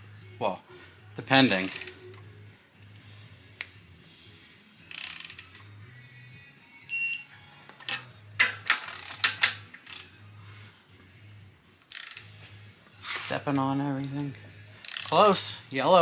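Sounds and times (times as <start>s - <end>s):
faint music: 0.0s - 16.0s
wrench ratcheting clicks: 1.5s - 2.0s, 4.9s - 5.6s, 8.8s - 10.1s, 11.9s - 12.3s, 14.8s - 15.4s.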